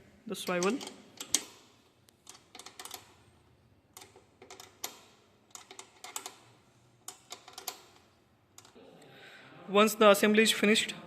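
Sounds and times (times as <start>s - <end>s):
spanner clicking on screws: 0.4s - 3.2s, 3.9s - 8.8s.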